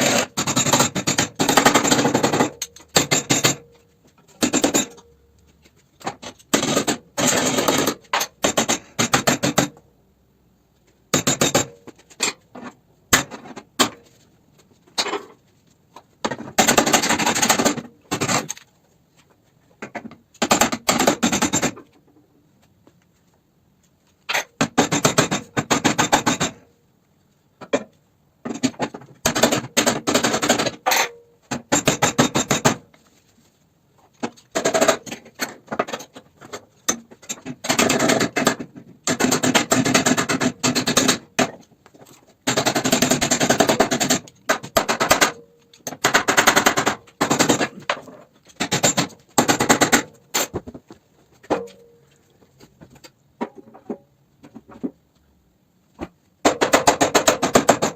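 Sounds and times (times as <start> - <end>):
pneumatic impact wrench hammering: 0.0 - 3.6, 6.2 - 9.8, 16.3 - 18.6, 20.4 - 21.8, 28.5 - 32.8, 36.9 - 41.6, 42.4 - 47.8, 48.5 - 50.6.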